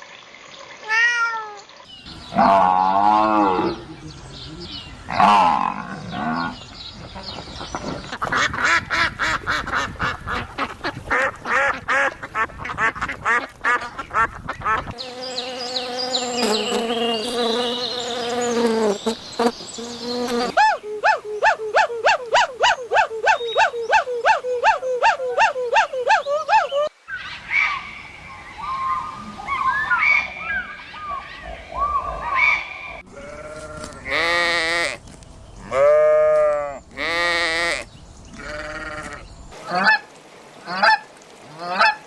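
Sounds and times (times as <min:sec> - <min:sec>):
short peeping calls: 0:13.8 - 0:26.9
rapid repeated animal calls: 0:20.2 - 0:26.9.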